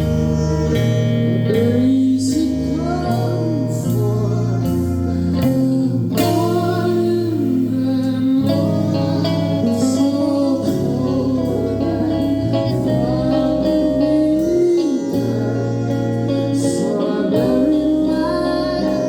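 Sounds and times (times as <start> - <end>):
guitar accompaniment: 0.0 - 19.0
person singing long bending notes: 0.0 - 19.0.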